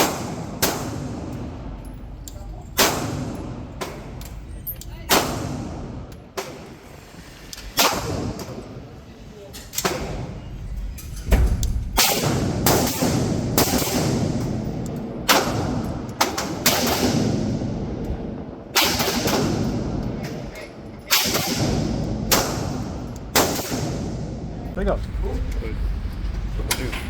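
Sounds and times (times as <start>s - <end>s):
gunshots with echo: 12.0s - 18.0s, 18.7s - 20.1s, 21.1s - 24.5s.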